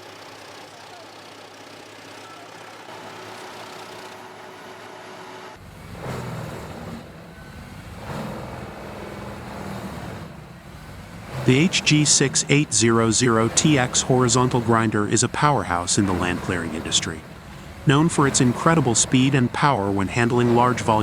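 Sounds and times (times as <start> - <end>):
wood-processing machinery running: 0.0 - 5.5, 11.3 - 21.0
deep engine rumble: 5.6 - 21.0.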